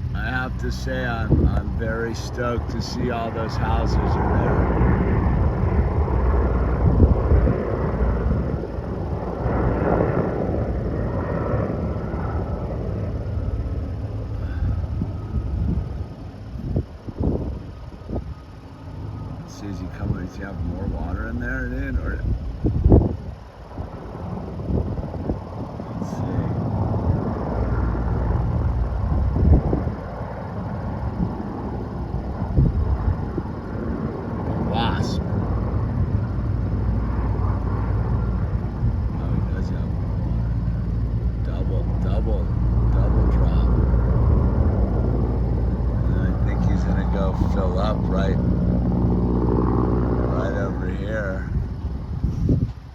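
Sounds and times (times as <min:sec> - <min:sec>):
helicopter rumble: 0:00.0 - 0:52.9
wind buffeting microphone: 0:00.0 - 0:52.9.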